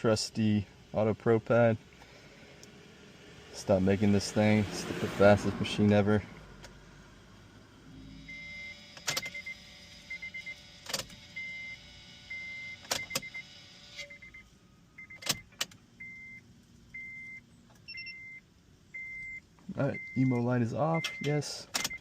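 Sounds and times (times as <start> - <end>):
steady hum: 0.0 - 21.0
longer held beeps: 8.0 - 10.6, 11.3 - 15.2, 16.0 - 22.0.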